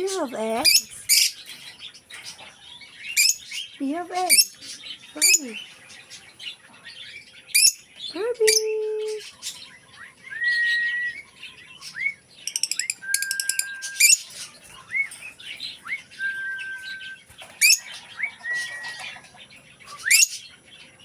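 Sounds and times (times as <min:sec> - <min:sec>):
bird whistling and chirping: 0:07.0 - 0:20.7.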